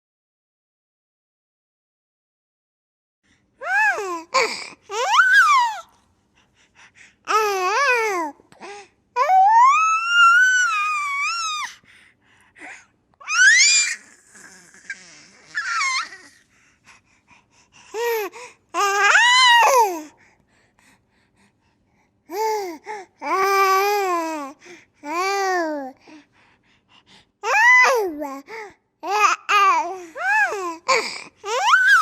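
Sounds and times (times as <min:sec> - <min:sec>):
baby laughing and squealing: 0:04.9 - 0:05.8, 0:13.2 - 0:16.4, 0:31.5 - 0:32.0.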